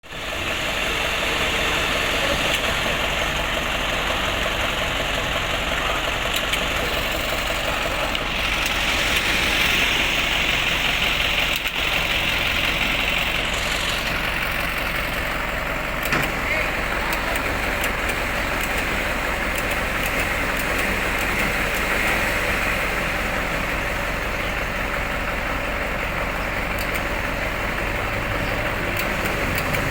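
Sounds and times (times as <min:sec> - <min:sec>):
vehicle engine running: 0:00.0 - 0:29.9
hiss: 0:06.8 - 0:14.2.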